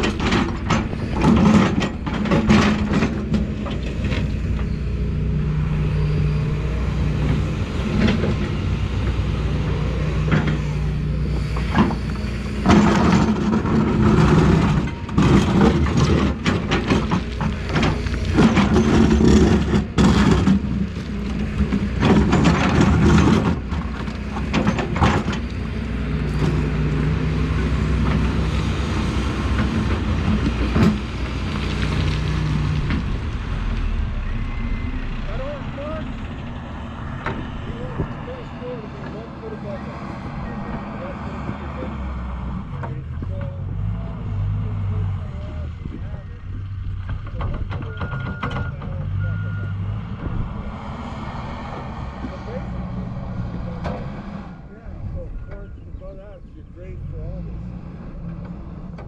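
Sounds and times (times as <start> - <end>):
excavator diesel engine: 0.0 - 59.0.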